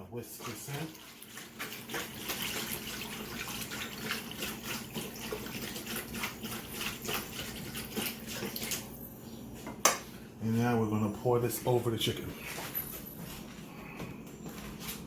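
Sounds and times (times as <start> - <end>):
whisk beating liquid: 0.2 - 8.9.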